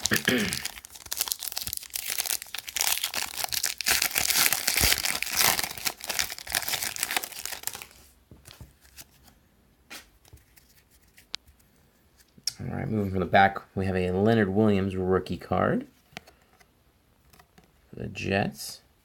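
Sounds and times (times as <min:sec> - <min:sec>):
wrapper tearing and crinkling: 0:00.0 - 0:08.1.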